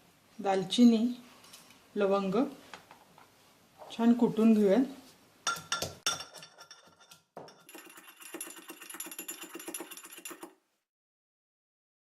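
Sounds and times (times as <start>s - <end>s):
pestle pounding in a mortar: 5.5s - 10.5s.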